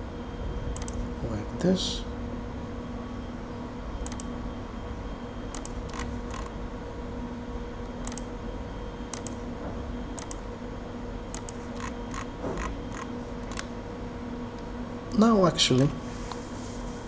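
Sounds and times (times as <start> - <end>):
faint electrical hum: 0.0 - 17.0
computer mouse clicking: 0.8 - 1.0, 4.0 - 4.3, 5.5 - 6.5, 7.8 - 8.3, 9.1 - 9.4, 10.2 - 10.5, 11.3 - 13.7.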